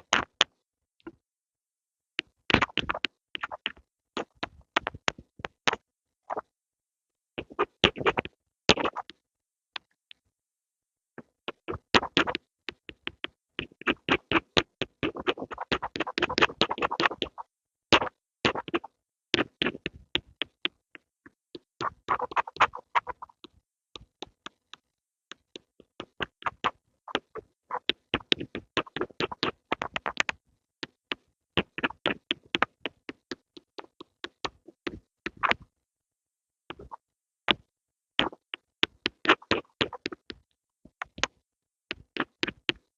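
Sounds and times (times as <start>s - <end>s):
pencils tapping and scratching: 21.6s - 35.7s.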